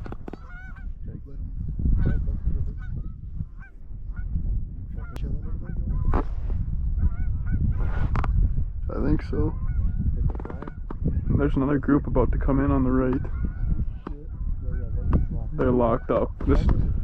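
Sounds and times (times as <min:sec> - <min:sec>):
geese honking: 0:00.0 - 0:01.0, 0:02.0 - 0:04.4, 0:07.0 - 0:07.8, 0:09.5 - 0:11.3, 0:13.2 - 0:16.4.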